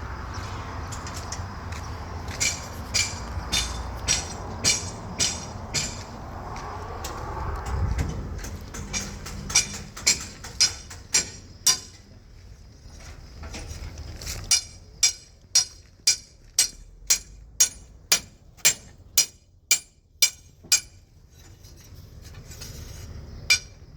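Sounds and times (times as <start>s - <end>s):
low rumble: 0.0s - 9.9s
hammer striking metal: 2.4s - 6.1s, 8.7s - 11.9s, 14.5s - 21.0s.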